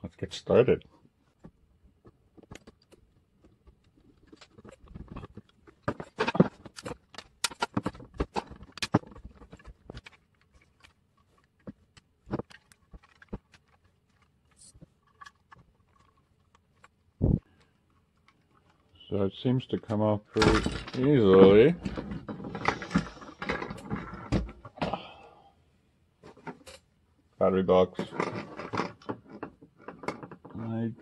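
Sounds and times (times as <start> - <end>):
hard plastic clicking and snapping: 1.4 - 18.9.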